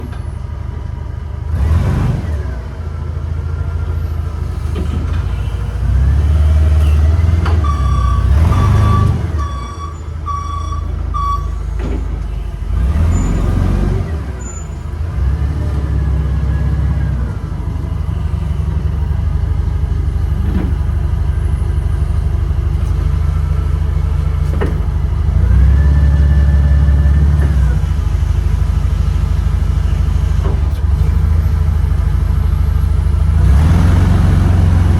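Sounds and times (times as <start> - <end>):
heavy machine engine revving: 1.4 - 34.9
backup alarm beeping: 7.6 - 11.6.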